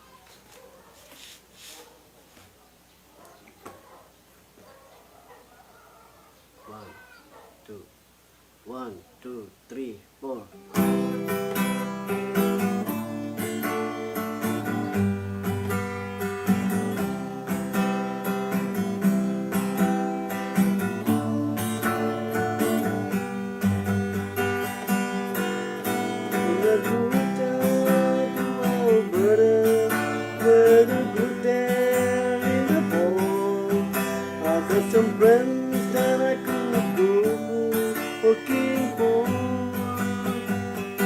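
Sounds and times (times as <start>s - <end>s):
acoustic guitar strumming: 10.3s - 41.0s.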